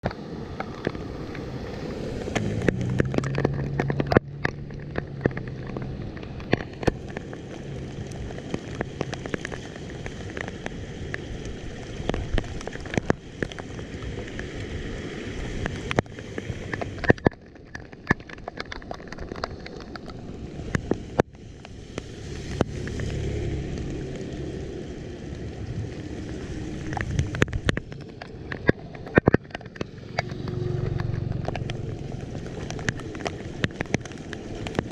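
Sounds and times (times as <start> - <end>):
rain falling: 0.0 - 34.9
sharp ticks and crackles: 0.0 - 34.9.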